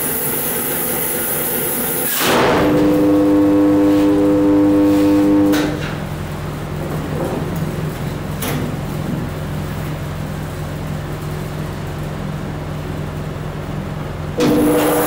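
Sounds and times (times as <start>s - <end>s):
band saw running: 14.4s - 15.0s.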